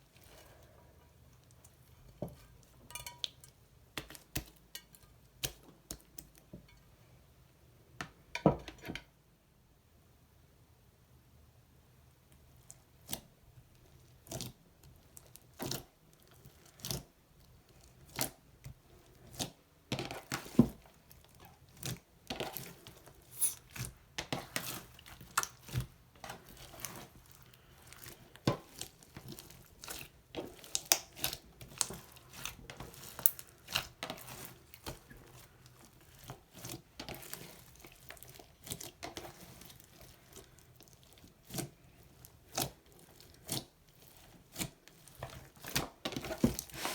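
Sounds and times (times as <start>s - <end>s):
slime popping and crackling: 28.0s - 40.0s.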